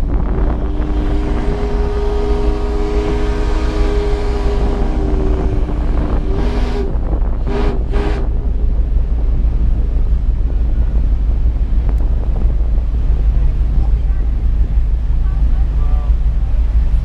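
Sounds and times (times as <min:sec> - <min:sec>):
low rumble of wind: 0:00.0 - 0:17.0
steam whistle chord: 0:00.6 - 0:06.9.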